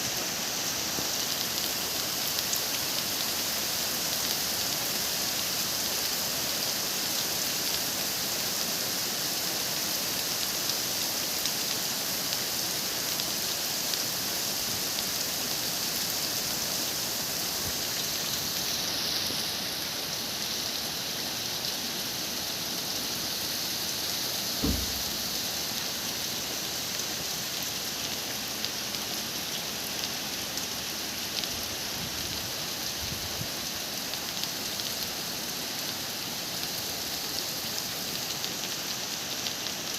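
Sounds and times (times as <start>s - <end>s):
heavy rain falling: 0.0s - 39.9s
dull thump: 24.6s - 25.2s.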